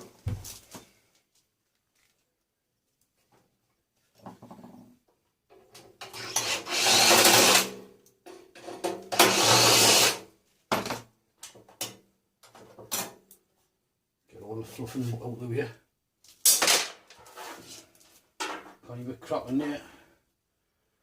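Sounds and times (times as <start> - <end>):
small power tool running: 9.2 - 10.2.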